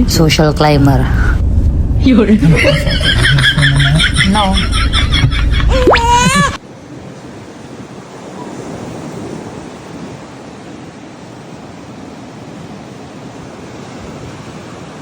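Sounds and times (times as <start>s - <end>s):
waves washing onto shore: 6.6s - 15.0s.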